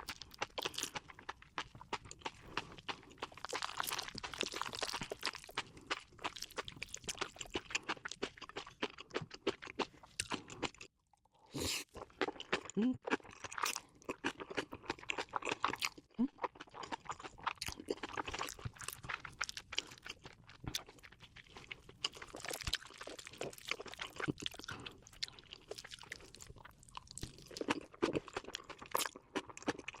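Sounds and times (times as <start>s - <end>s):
person chewing crunchy food: 0.0s - 30.0s.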